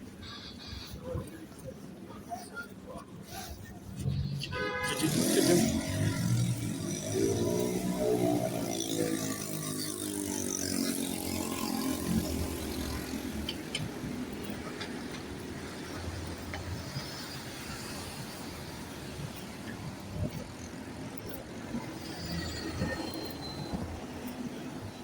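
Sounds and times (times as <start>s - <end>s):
passing vehicles rumble: 3.9s - 25.0s.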